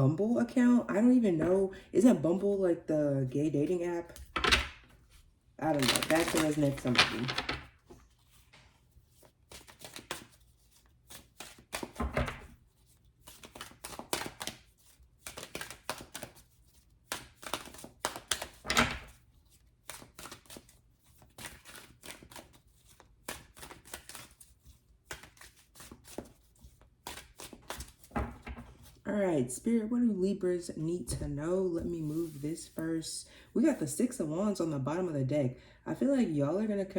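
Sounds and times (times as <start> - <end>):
cards being shuffled: 4.1 - 29.0, 31.9 - 32.8.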